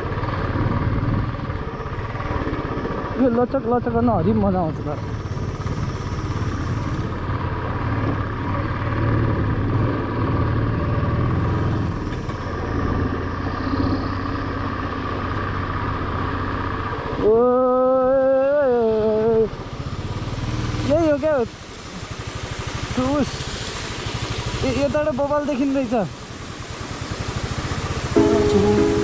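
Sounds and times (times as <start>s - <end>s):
wind and road noise: 0.0s - 17.4s, 18.2s - 29.0s
motorcycle engine running: 0.0s - 29.0s
loud humming tone: 28.2s - 29.0s.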